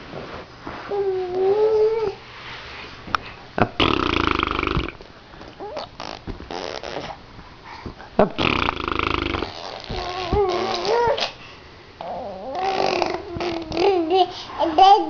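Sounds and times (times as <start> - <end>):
baby squeaking: 5.6 - 7.2, 9.4 - 11.3
baby making raspy growls: 8.4 - 11.4, 12.0 - 14.2.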